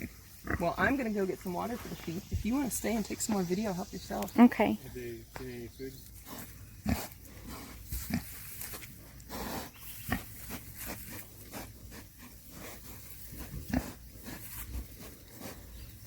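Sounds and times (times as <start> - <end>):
pigs grunting: 0.0 - 1.2, 6.1 - 16.0.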